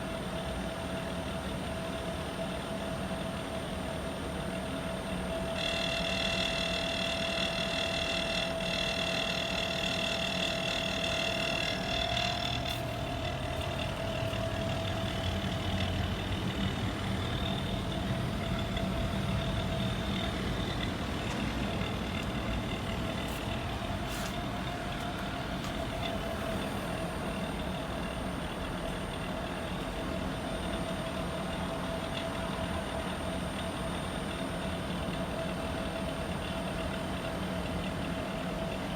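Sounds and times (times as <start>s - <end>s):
air conditioner unit humming: 0.0s - 38.9s
high whine: 5.6s - 30.8s.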